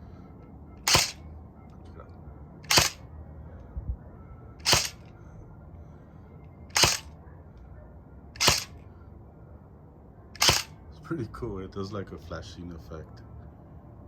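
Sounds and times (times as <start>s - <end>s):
airsoft rifle shots: 0.8s - 1.2s, 2.6s - 3.0s, 4.6s - 5.0s, 6.7s - 7.1s, 8.4s - 8.8s, 10.4s - 10.8s.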